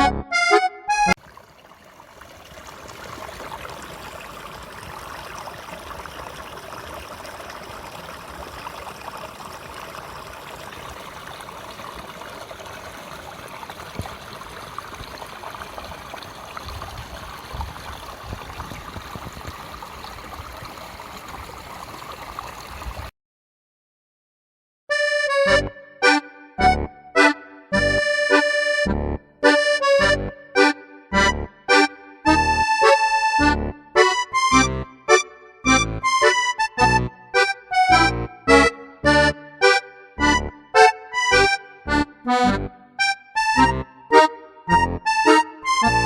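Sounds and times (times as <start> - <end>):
stream flowing over rocks: 1.2 - 23.1.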